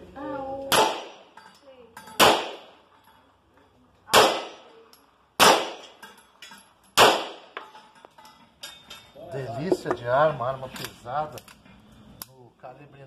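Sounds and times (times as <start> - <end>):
pistol shots with echo: 0.7 - 1.3, 2.2 - 2.8, 4.1 - 4.7, 5.4 - 6.0, 7.0 - 7.6.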